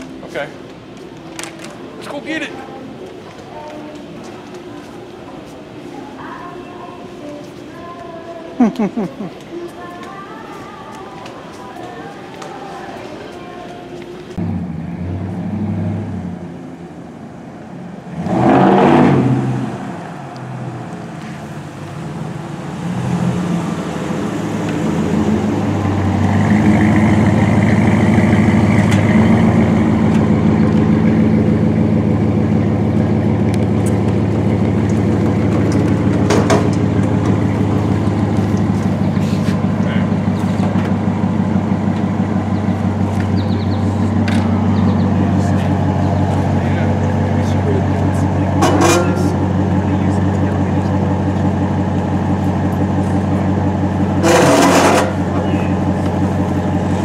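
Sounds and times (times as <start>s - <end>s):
pickup truck engine droning: 14.4s - 57.0s.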